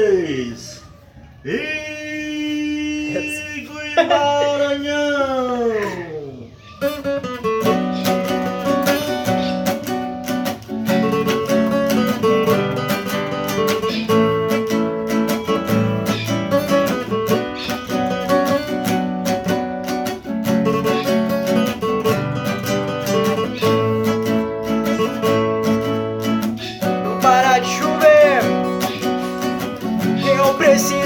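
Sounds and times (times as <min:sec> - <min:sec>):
acoustic guitar strumming: 0:06.8 - 0:31.0.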